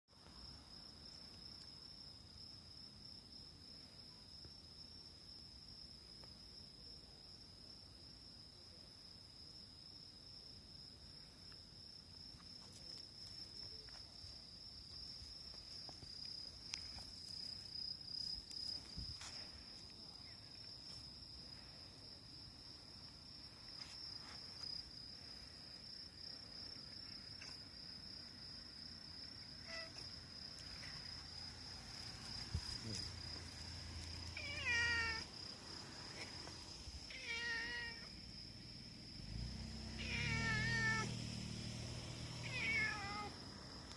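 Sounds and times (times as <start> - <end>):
high-pitched insect trill: 8.0 - 43.9
cat meowing: 29.6 - 30.1, 34.4 - 35.3, 37.1 - 38.1, 40.0 - 41.1, 42.4 - 43.4.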